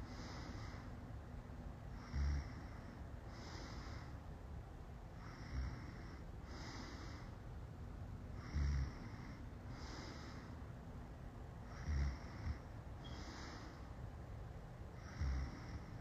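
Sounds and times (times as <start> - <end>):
slow hissy breaths: 0.0 - 1.2, 1.9 - 7.6, 8.3 - 16.0
person snoring: 11.7 - 12.6, 15.0 - 16.0.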